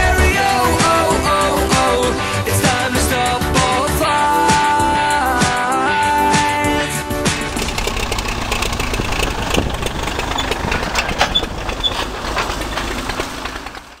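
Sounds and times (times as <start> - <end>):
farm machinery engine rumble: 0.0 - 14.0
machine parts rattling and clicking: 7.5 - 14.0.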